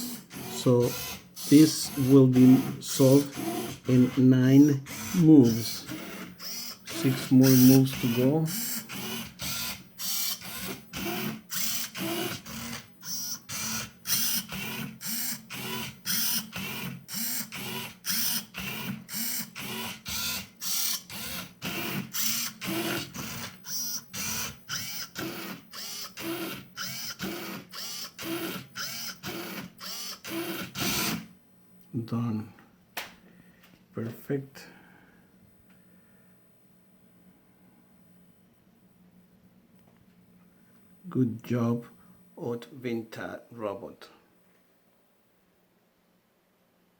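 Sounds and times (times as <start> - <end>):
servo motors whirring: 0.0 - 31.2.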